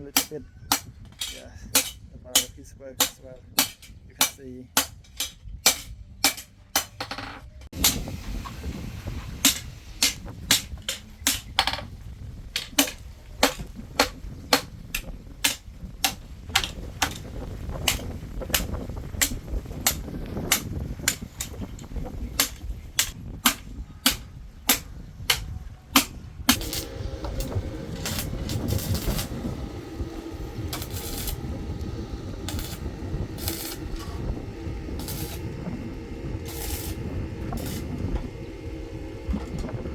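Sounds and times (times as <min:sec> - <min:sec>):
hammer striking steel on anvil: 0:00.1 - 0:07.0
low rumble: 0:26.4 - 0:39.9.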